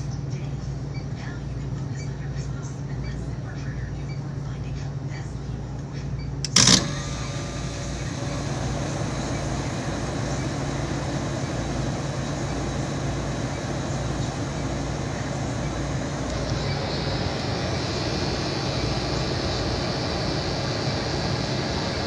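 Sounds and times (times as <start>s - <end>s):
refrigeration compressor humming: 6.3s - 22.0s.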